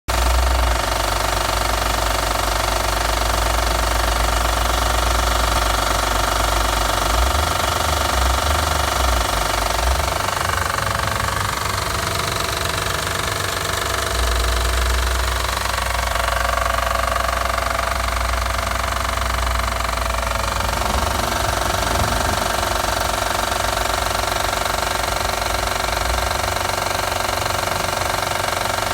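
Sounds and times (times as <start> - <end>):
car engine knocking: 0.1 - 28.9.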